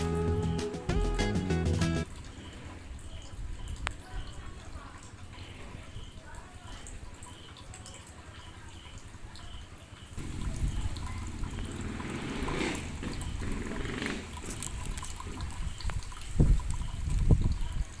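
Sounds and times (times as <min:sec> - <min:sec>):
water trickling and dripping: 0:02.0 - 0:18.0.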